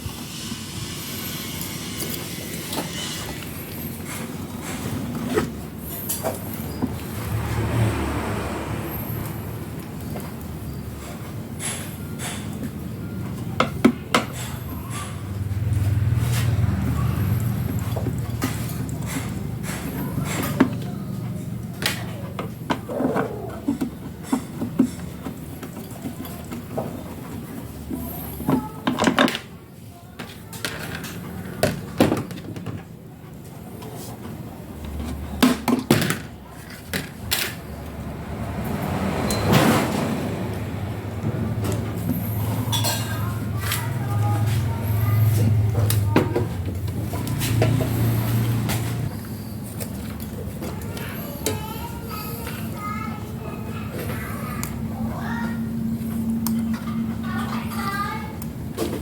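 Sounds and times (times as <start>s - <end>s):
tools and parts clattering: 41.4s - 44.6s.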